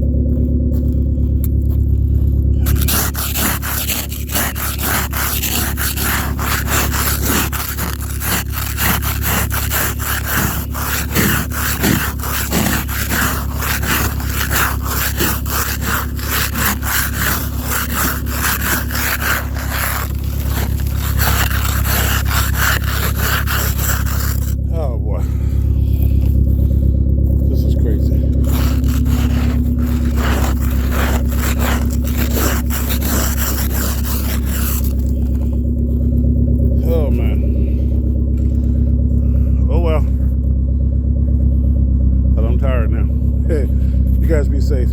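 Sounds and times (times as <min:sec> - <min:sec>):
low hum: 0:00.0 - 0:44.9
ice scraper rasping on glass: 0:02.6 - 0:24.6, 0:28.2 - 0:35.5.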